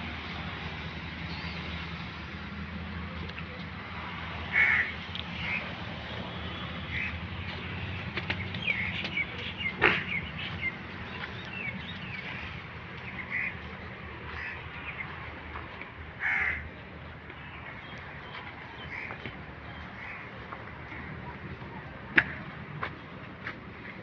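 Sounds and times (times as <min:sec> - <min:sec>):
birds calling: 0:04.5 - 0:05.8, 0:06.5 - 0:15.3, 0:16.2 - 0:21.8.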